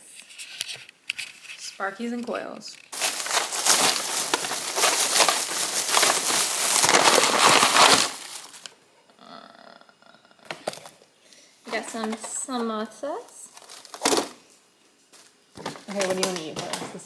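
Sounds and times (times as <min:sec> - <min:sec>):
bag crinkling: 0:02.9 - 0:08.7, 0:13.6 - 0:14.4.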